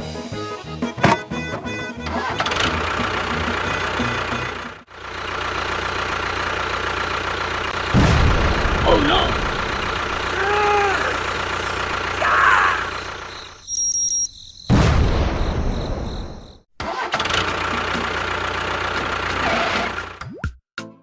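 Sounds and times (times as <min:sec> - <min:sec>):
small vehicle engine running: 0:01.4 - 0:13.6, 0:16.8 - 0:20.2.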